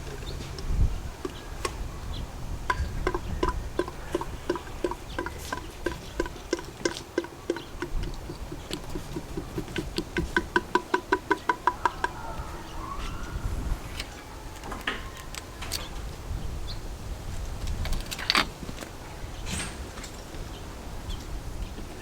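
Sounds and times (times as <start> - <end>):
oil glugging from bottle: 2.8 - 11.9.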